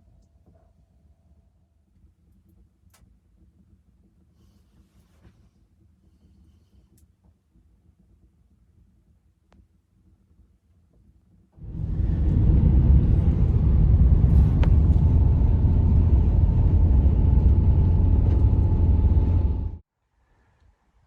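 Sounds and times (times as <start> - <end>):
loud low rumbling noise: 11.6 - 19.8.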